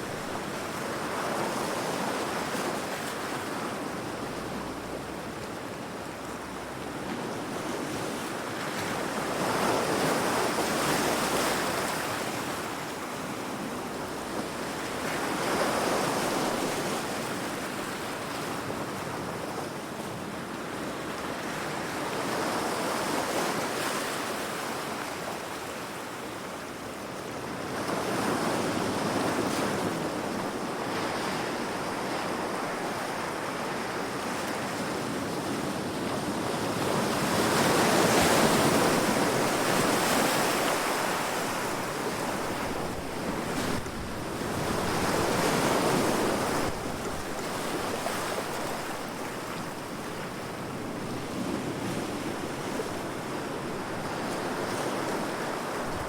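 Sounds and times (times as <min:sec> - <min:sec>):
waves crashing against rocks: 0:35.9 - 0:50.7.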